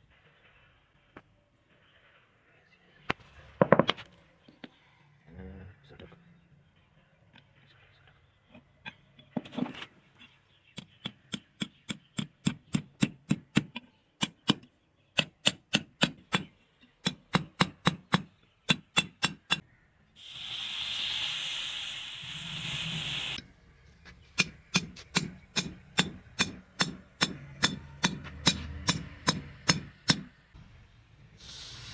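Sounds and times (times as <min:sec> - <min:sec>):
loud hiss: 0:20.2 - 0:23.4, 0:31.3 - 0:31.9
hammer striking metal on anvil: 0:24.4 - 0:30.3.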